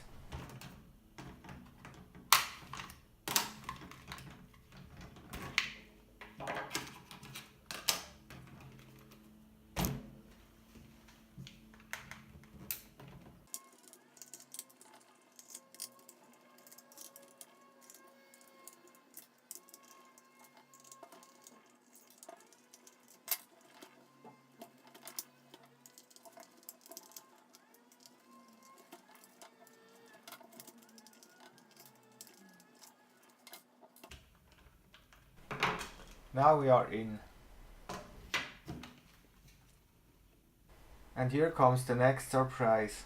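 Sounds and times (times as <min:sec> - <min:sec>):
faint background music: 0:00.0 - 0:43.0
screwdriver and parts rattling: 0:12.4 - 0:34.7.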